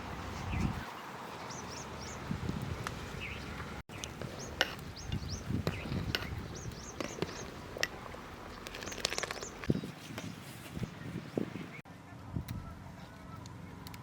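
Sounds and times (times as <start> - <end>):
small birds chirping: 0.2 - 11.9.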